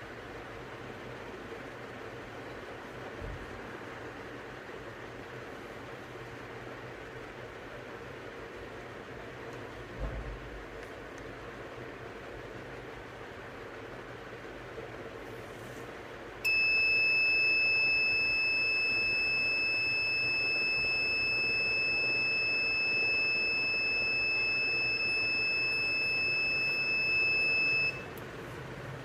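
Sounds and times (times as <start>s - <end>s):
high-pitched buzzer tone: 16.5s - 28.1s.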